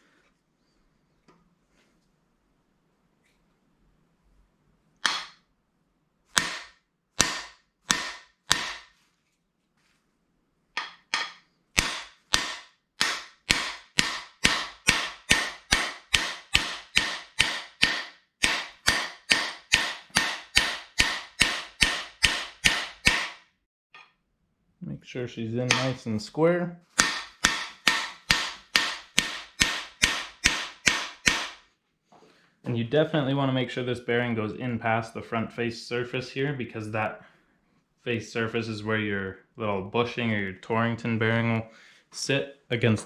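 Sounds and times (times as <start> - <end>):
hammer blows on metal tool: 25.7 - 26.1.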